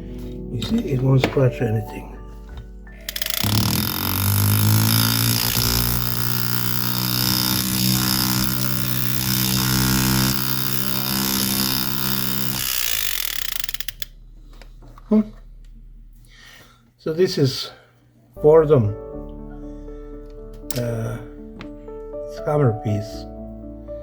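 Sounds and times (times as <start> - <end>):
flexible-shaft tool buzzing: 3.1 - 14.2.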